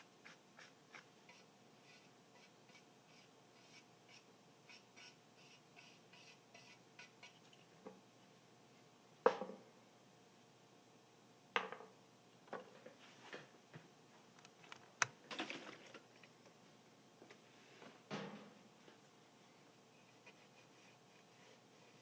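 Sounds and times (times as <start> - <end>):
faint scratching: 0.0 - 7.6, 19.9 - 22.0.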